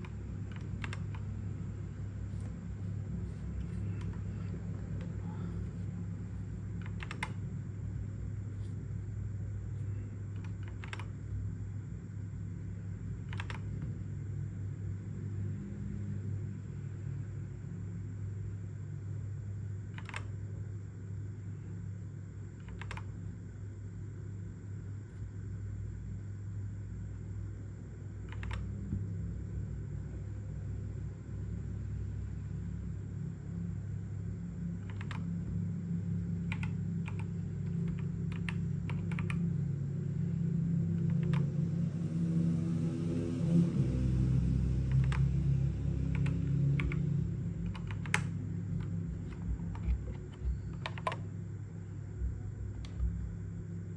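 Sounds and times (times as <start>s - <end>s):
mechanical keyboard key clicks: 0.0s - 1.3s, 6.8s - 7.4s, 10.4s - 11.1s, 13.3s - 13.7s, 20.0s - 20.3s, 22.6s - 23.1s, 28.3s - 28.7s, 34.8s - 35.3s, 36.5s - 39.4s, 41.0s - 41.5s, 47.6s - 51.2s
steady low hum: 0.0s - 53.9s.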